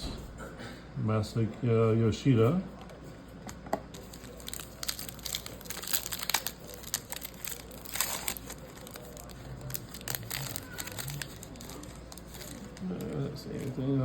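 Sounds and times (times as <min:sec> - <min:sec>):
wrapper crinkling and tearing: 0:03.9 - 0:14.0.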